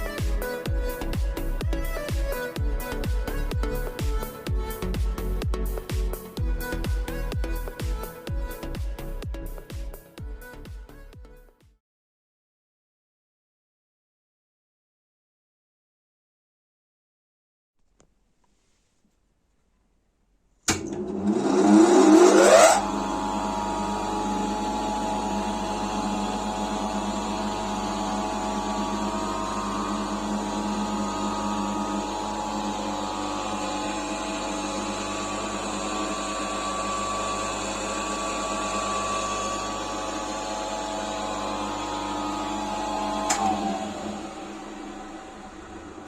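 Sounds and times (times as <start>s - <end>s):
bench grinder motor whine: 20.8s - 46.0s.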